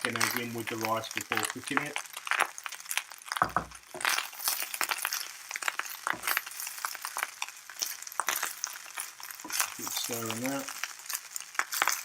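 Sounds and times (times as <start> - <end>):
utensil scraping a wok: 7.8 - 10.6.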